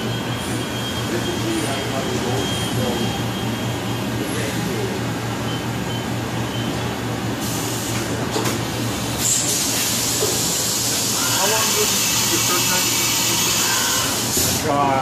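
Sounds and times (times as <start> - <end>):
hiss: 9.2 - 11.2.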